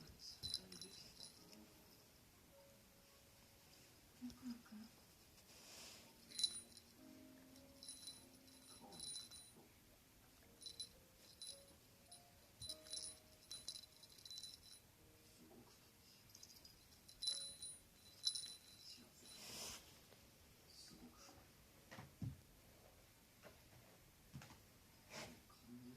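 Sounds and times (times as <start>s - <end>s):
small bell jingling: 0.3s - 1.6s, 6.2s - 9.6s, 10.6s - 14.8s, 16.2s - 19.5s.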